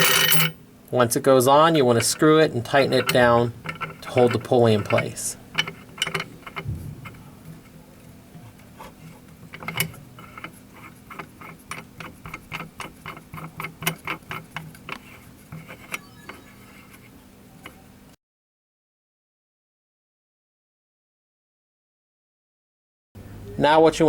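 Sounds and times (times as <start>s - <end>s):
faint steady hum: 23.2s - 24.0s.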